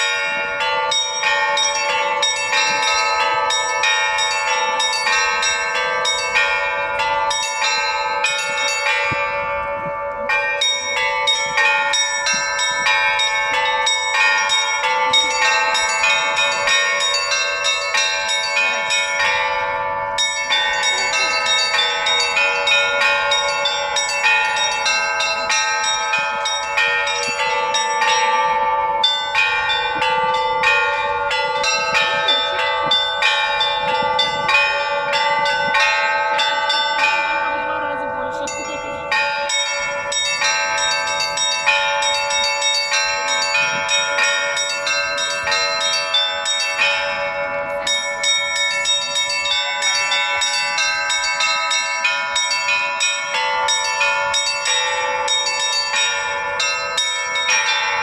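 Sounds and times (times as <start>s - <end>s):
large church bells ringing: 0.0s - 58.0s
small church bells striking fast: 0.0s - 58.0s.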